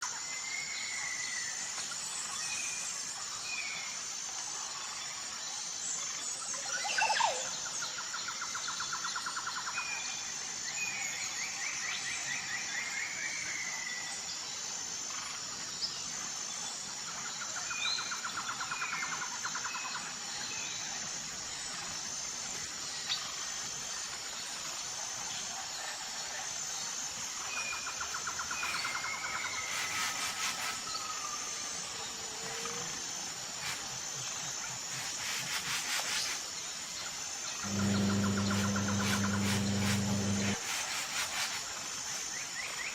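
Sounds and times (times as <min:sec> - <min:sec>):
insects chirring: 0:26.5 - 0:42.9.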